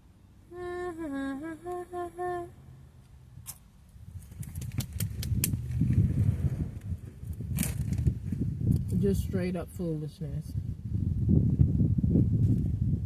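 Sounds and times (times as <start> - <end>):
woman humming: 0.5 - 2.6.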